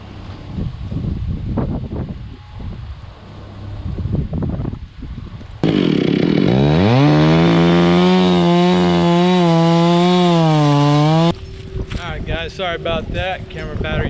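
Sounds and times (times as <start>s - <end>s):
wind noise on microphone: 0.2s - 5.8s, 11.3s - 14.0s
chainsaw engine revving: 5.6s - 11.3s.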